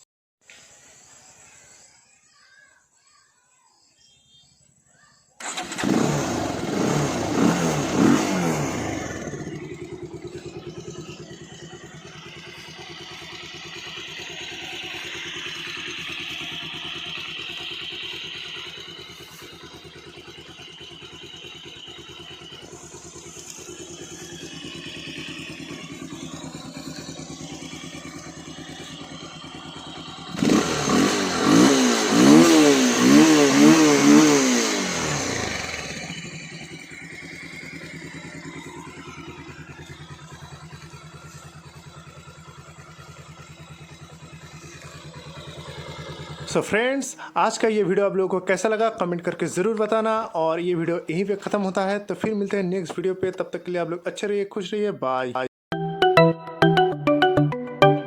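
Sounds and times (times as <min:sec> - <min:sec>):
motorcycle engine revving: 0:05.4 - 0:50.2
motorcycle engine idling: 0:05.4 - 0:54.9.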